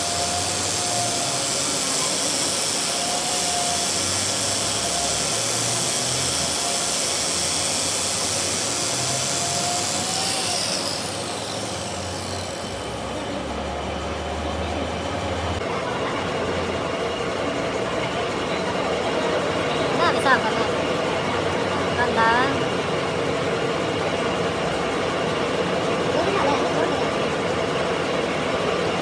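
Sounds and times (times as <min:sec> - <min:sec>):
high hiss: 0:00.0 - 0:13.0
workshop machinery running: 0:00.0 - 0:29.0.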